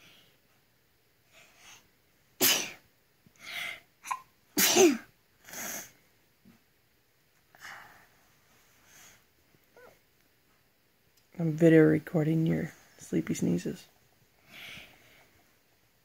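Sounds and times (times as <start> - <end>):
boy breathing: 1.3 - 1.9, 3.3 - 3.9, 7.5 - 9.3, 14.4 - 15.6
boy sneezing: 2.4 - 2.8, 4.0 - 5.9.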